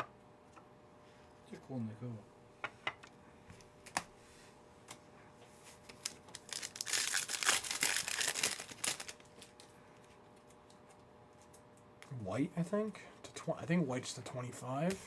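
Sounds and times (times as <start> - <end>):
card pack wrapper crinkling: 5.9 - 9.7.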